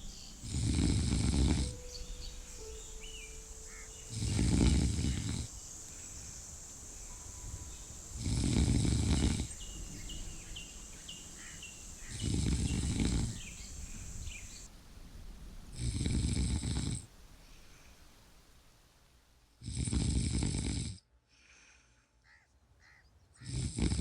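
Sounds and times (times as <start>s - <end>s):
person snoring: 0.4s - 1.8s, 4.1s - 5.5s, 8.2s - 9.5s, 12.2s - 13.4s, 15.8s - 17.0s, 19.6s - 21.0s, 23.4s - 24.0s.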